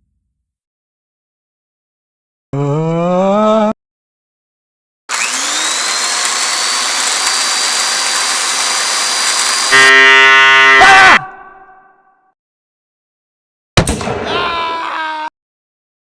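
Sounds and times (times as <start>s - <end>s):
buzzing tone dropping in pitch: 9.7s - 10.9s.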